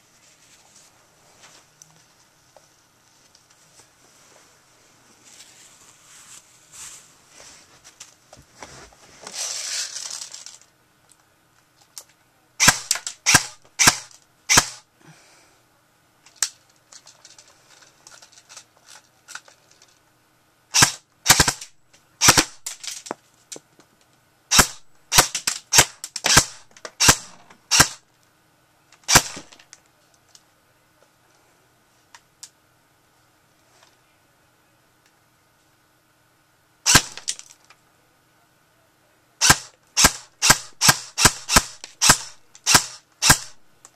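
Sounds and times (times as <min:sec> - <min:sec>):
airsoft gun shots: 0:12.6 - 0:14.8, 0:20.7 - 0:22.7, 0:24.5 - 0:28.0, 0:29.1 - 0:29.6, 0:36.9 - 0:37.4, 0:39.4 - 0:43.6.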